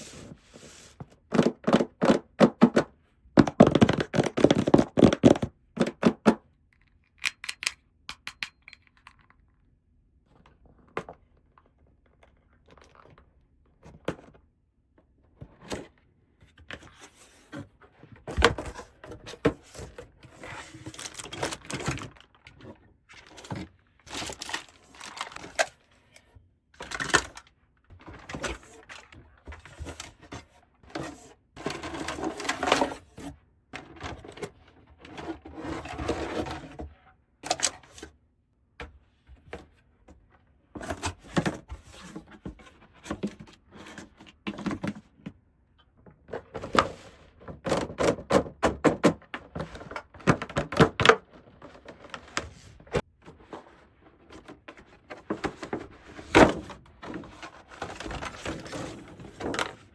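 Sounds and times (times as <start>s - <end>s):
plastic toy pieces clicking: 7.1s - 9.4s.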